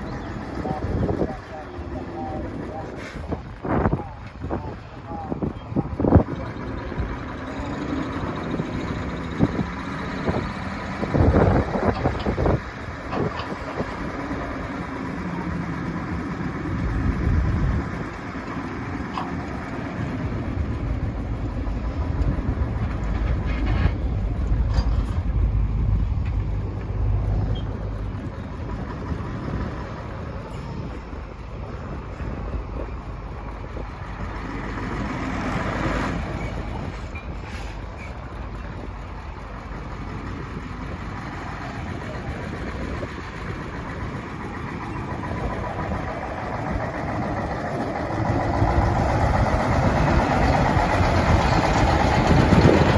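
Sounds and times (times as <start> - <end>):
diesel machinery running: 0.0 - 52.9
heavy low rumble: 0.0 - 52.9
metal knocks and clanks: 22.8 - 25.4.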